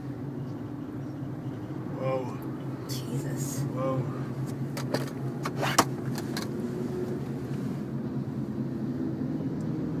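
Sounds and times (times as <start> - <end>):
car road and engine noise: 0.0 - 10.0.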